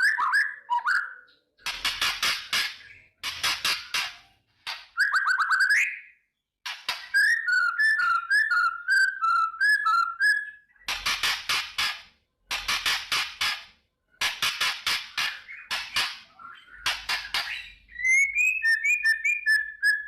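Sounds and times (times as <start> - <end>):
bird harsh crackling rattles: 1.6 - 4.4, 10.8 - 17.7
songbird singing: 15.4 - 20.0.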